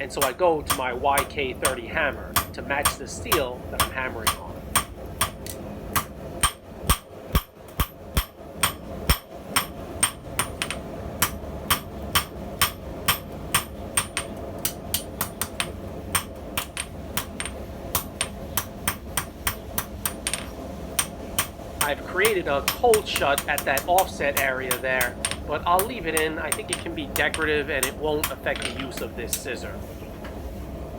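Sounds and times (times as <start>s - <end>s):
steady hum: 0.0s - 30.9s
hammer ringing on anvil: 0.2s - 5.4s, 7.4s - 29.1s.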